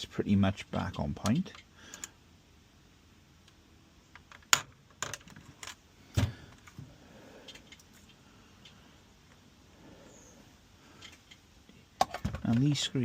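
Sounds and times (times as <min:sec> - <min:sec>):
plastic parts clicking and knocking: 0:00.8 - 0:02.2, 0:03.4 - 0:09.4, 0:11.0 - 0:12.8.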